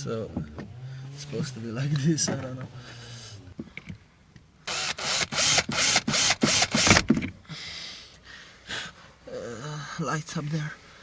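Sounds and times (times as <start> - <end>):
harsh ratchet-like scraping: 4.7 - 7.1.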